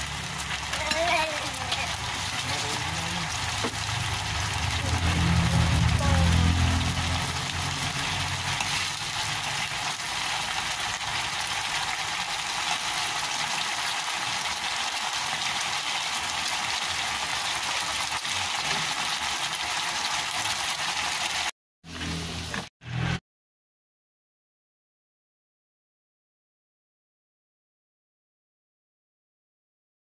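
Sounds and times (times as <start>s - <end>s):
food sizzling in a hot pan: 0.0s - 23.2s.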